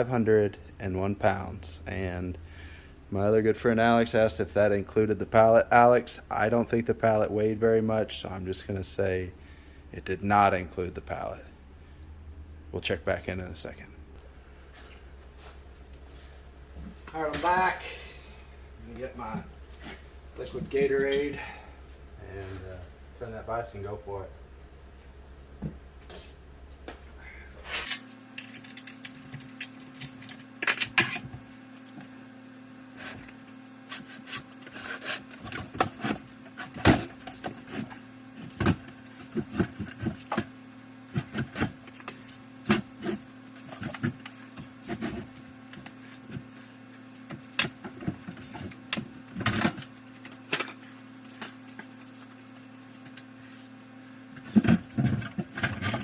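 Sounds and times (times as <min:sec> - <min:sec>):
steady hum: 0:00.0 - 0:56.0
knocks clunks and scraping of machine: 0:54.3 - 0:56.0.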